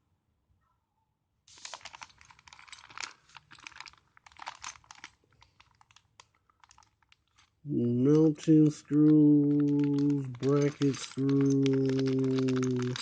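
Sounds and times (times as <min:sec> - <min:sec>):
plastic bag crinkling: 0:01.5 - 0:07.7, 0:08.3 - 0:13.0
screws clicking: 0:08.6 - 0:13.0.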